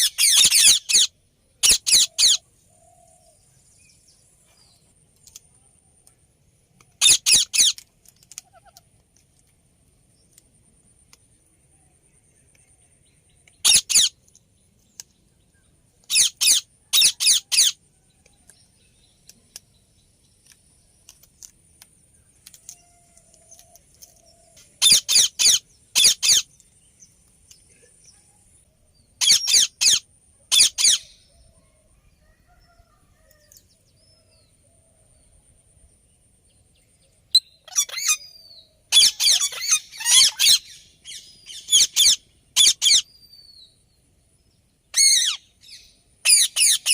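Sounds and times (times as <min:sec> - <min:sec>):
parakeet shrill calls: 0:00.0 - 0:02.4, 0:07.0 - 0:07.8, 0:13.6 - 0:14.2, 0:16.1 - 0:17.8, 0:24.8 - 0:26.5, 0:29.2 - 0:31.1, 0:37.4 - 0:43.1, 0:44.9 - 0:46.9.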